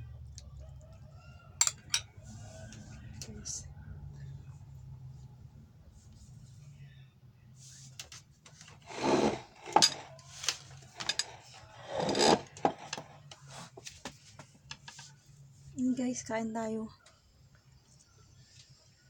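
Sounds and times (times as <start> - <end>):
rasping rubbing noises: 8.6 - 13.9.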